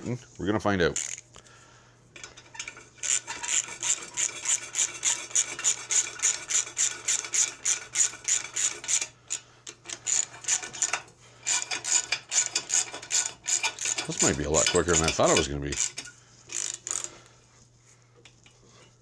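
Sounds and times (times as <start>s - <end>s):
ratchet wrench rasping: 1.0s - 1.2s, 2.5s - 17.1s.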